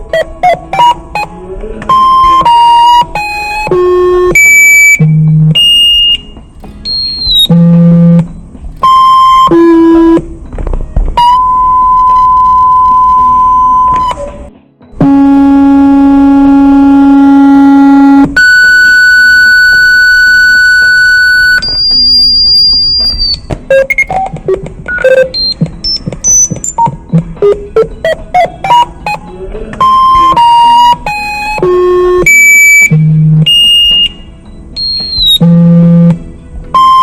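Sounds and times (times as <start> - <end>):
high steady alert tone: 1.9 - 10.2, 19.0 - 29.2, 29.8 - 36.2
longer beeps at changing pitches: 1.9 - 10.2, 15.0 - 29.2, 29.8 - 36.2
short beeps jumping in pitch: 1.9 - 10.2, 15.0 - 29.2, 29.8 - 36.2, 36.8 - 37.0
low buzzing tone: 5.0 - 10.2.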